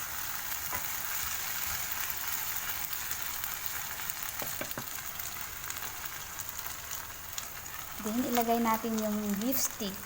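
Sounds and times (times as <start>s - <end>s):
sauce sizzling in a frying pan: 0.0s - 10.0s.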